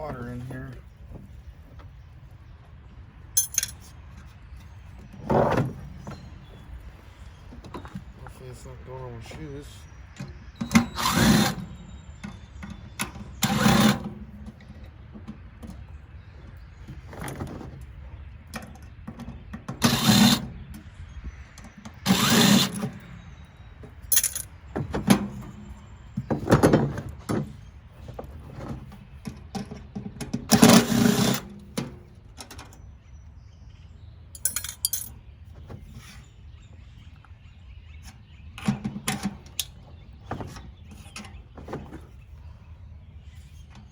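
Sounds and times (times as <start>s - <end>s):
power drill bursts: 10.8s - 11.8s, 19.8s - 20.5s, 22.0s - 22.9s, 30.6s - 31.5s.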